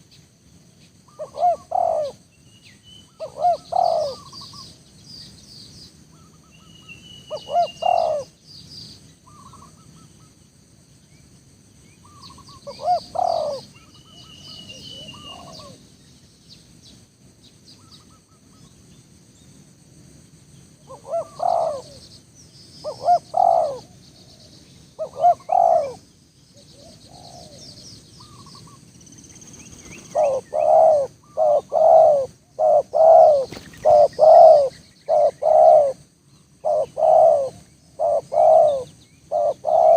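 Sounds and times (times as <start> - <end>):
small birds chirping: 0.0 - 19.6, 20.8 - 39.9
doves cooing: 1.1 - 2.2, 3.2 - 4.6, 7.3 - 8.4, 12.1 - 15.8, 20.9 - 22.0, 22.8 - 26.1, 26.7 - 28.8, 29.6 - 39.9.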